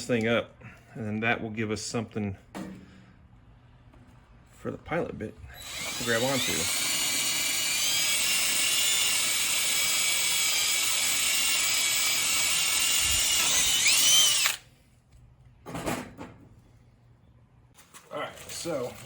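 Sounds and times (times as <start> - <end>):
power drill whining: 5.6 - 14.6.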